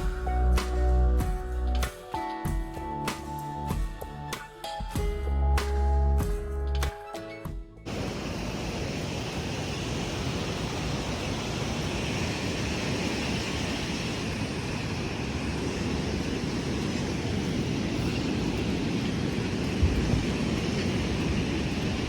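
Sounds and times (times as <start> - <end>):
ocean surf rushing: 7.9 - 22.0
wind buffeting microphone: 7.9 - 22.0.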